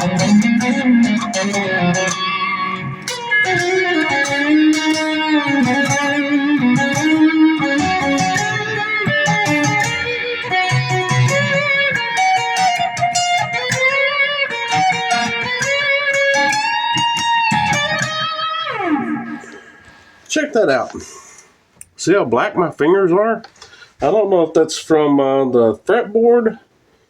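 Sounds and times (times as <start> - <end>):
electric guitar lead notes: 0.0 - 20.2.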